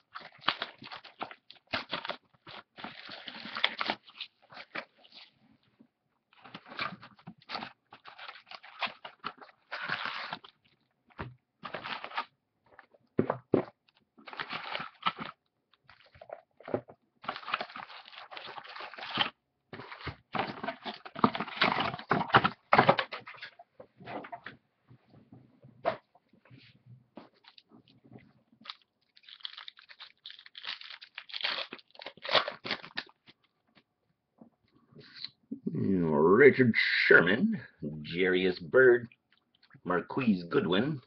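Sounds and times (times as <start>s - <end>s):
foil wrappers crinkling and tearing: 0.0s - 5.3s, 6.4s - 10.7s, 11.6s - 12.3s, 14.2s - 16.4s, 17.2s - 23.5s, 28.6s - 33.4s.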